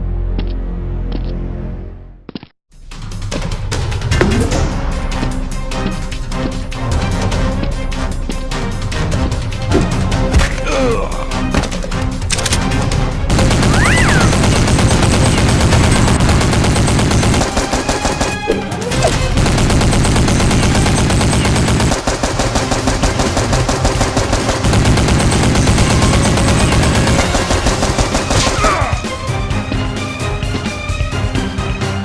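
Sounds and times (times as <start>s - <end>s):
rapid automatic gunfire: 13.3s - 29.1s.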